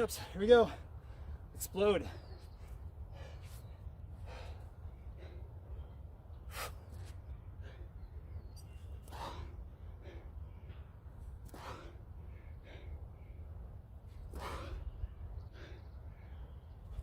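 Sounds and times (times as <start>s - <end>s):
man breathing out sharply: 14.2s - 15.9s.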